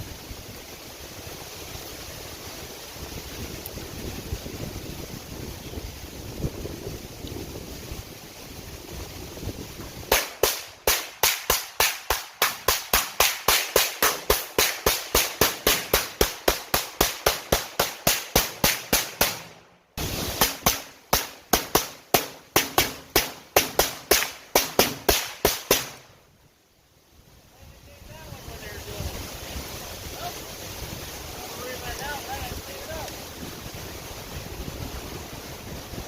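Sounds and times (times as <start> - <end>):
rifle firing rapid single shots: 10.1 - 19.6, 20.4 - 26.0.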